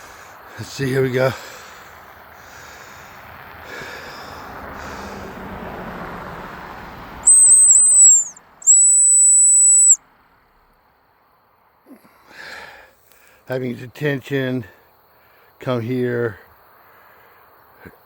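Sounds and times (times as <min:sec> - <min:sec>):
dog whistle blasts: 0:07.2 - 0:10.0.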